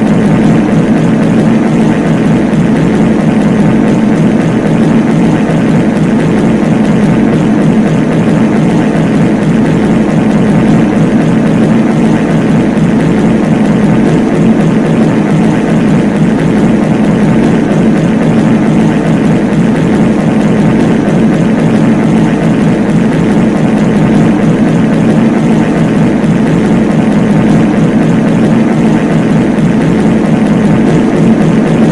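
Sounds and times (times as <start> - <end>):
stacked fart sound effects drone: 0.0 - 31.9.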